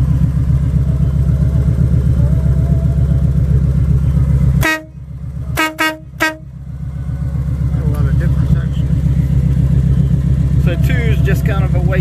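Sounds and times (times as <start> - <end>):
motorcycle engine idling: 0.0 - 12.0
air horn toot: 4.6 - 6.6.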